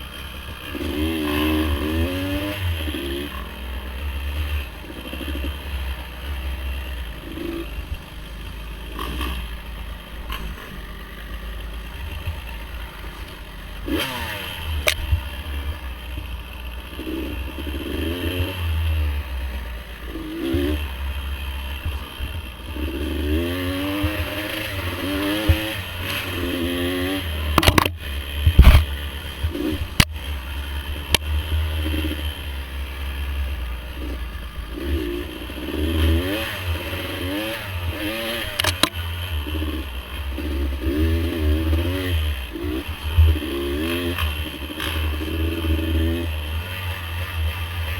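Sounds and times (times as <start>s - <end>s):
dirt bike engine revving: 0.0s - 47.9s
sharp knocks and clatter: 27.5s - 28.9s.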